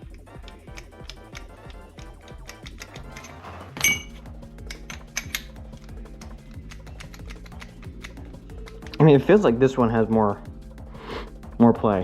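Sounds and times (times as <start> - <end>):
background music with beat: 0.0 - 12.0
metallic clink of steel parts: 2.5 - 5.9.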